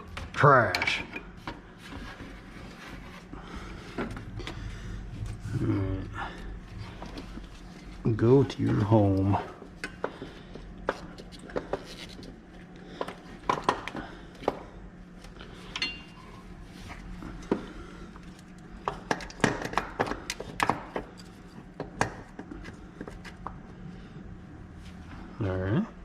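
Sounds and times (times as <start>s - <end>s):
faint steady hum: 0.0s - 26.0s.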